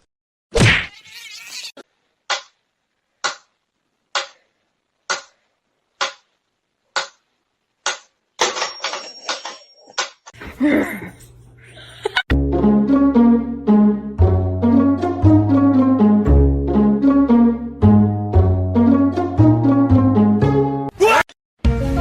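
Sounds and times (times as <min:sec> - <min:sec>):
plucked and bowed string music: 0:12.4 - 0:20.9.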